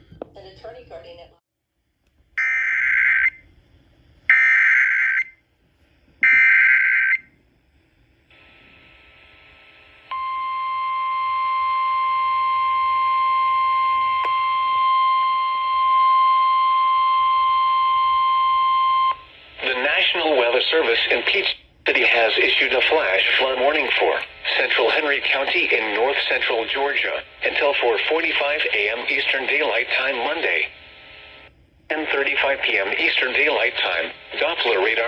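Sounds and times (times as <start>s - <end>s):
steady warning alarm tone: 2.4s - 3.5s, 4.3s - 5.5s, 6.2s - 7.4s, 10.1s - 19.3s
warbling data tone bursts: 4.3s - 5.4s, 6.2s - 7.3s.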